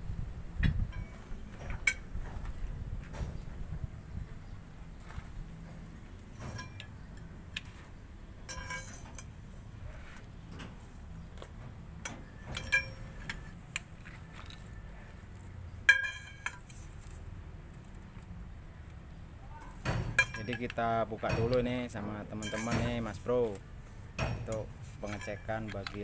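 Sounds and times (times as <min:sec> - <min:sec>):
metal tools clinking: 0:06.3 - 0:09.5, 0:12.0 - 0:14.8, 0:15.9 - 0:17.2, 0:19.6 - 0:26.0.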